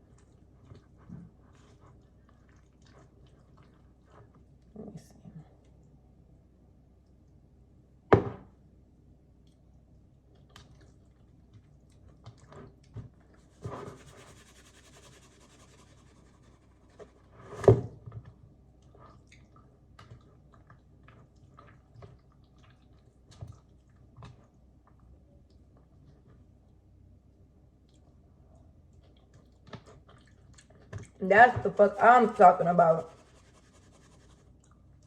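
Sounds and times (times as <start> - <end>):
small clicks and squishy sounds: 0.0 - 6.0, 9.3 - 13.5, 18.1 - 31.2.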